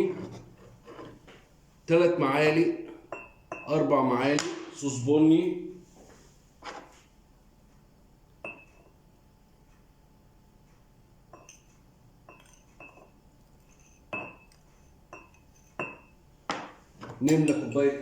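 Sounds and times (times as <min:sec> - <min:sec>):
metal spoon clinking on dish: 0:02.9 - 0:03.8, 0:08.4 - 0:09.0, 0:11.3 - 0:16.2, 0:17.1 - 0:18.0.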